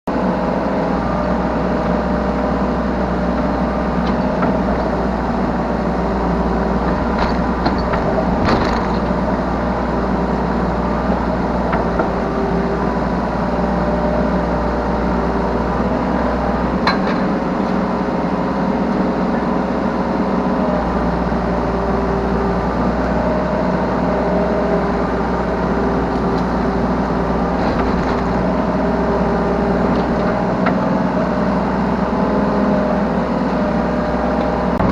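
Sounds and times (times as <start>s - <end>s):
excavator diesel engine running: 0.1s - 34.9s
machine whine: 34.7s - 34.9s.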